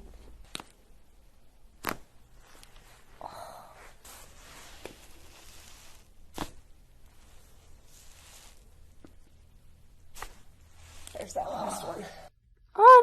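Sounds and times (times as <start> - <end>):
soft rubbing noise: 2.3 - 9.3, 10.0 - 12.1.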